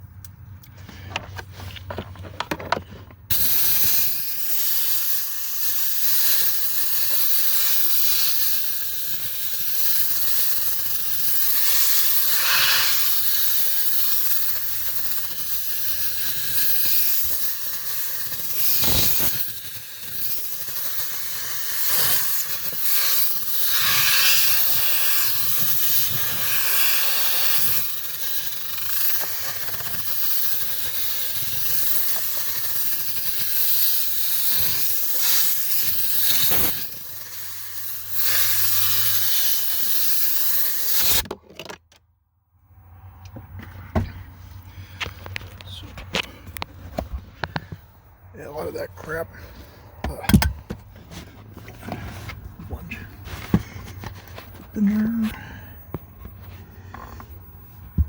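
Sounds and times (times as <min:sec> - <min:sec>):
compressed air hissing: 0:03.3 - 0:41.2.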